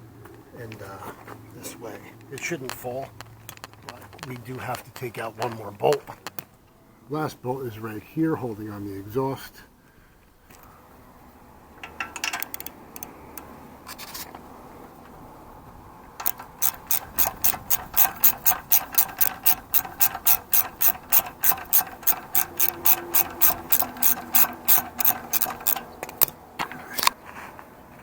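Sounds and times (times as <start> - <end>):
socket ratchet clicking: 11.8 - 13.5, 16.2 - 26.4.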